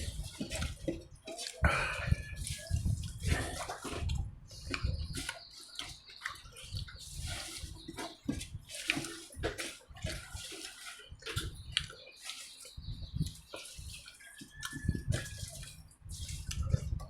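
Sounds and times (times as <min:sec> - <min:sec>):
wet chewing and lip smacking: 0:01.4 - 0:07.0, 0:11.2 - 0:17.0.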